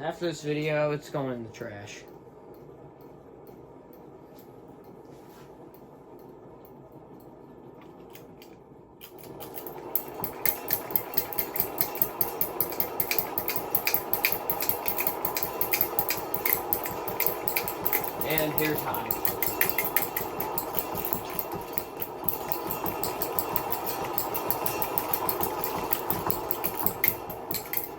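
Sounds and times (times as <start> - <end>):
ceiling fan rattling: 0.0 - 27.9.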